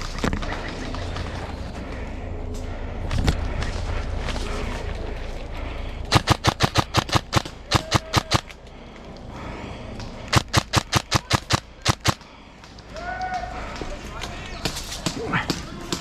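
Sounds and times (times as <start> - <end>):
airsoft rifle shots: 6.1 - 8.5, 10.3 - 12.2.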